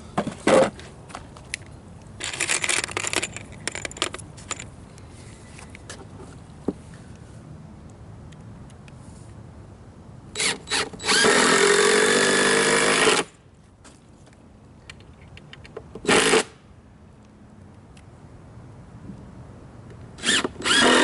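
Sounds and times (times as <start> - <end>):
power drill whirring: 10.4 - 13.3, 20.2 - 21.0.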